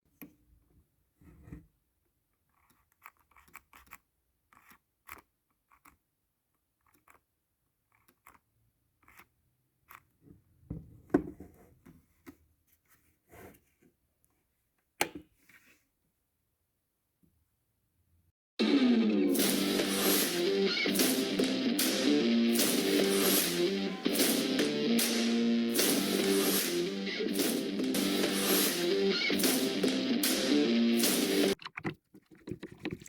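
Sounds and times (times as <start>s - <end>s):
clicks and scrapes of tool work: 2.5s - 6.0s.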